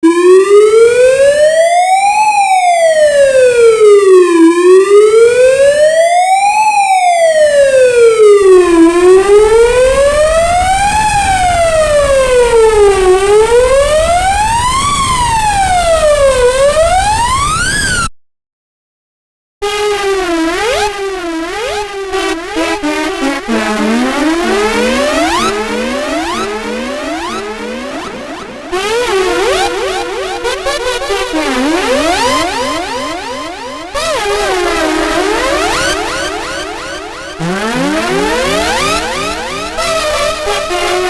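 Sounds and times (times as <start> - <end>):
police siren wailing: 0.0 - 18.1, 19.6 - 41.0.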